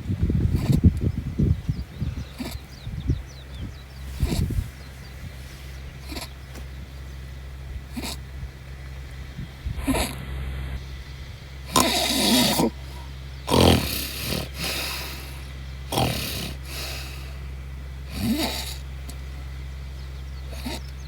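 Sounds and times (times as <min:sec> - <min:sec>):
man snoring: 0:11.7 - 0:17.4, 0:18.1 - 0:18.9, 0:20.5 - 0:20.9.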